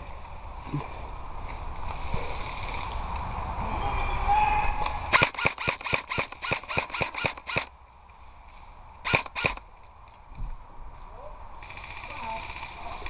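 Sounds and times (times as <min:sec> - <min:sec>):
airsoft gun shots: 0:04.8 - 0:07.7, 0:09.0 - 0:09.7.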